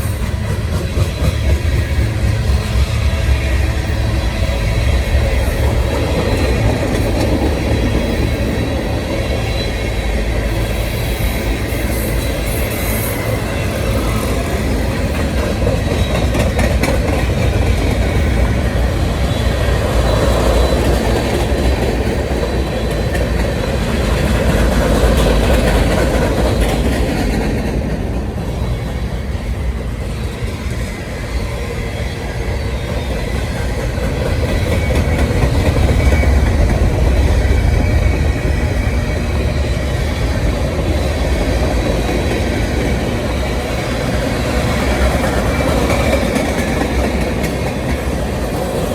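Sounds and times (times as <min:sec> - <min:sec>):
freight train cars rumbling: 0:00.0 - 0:48.9.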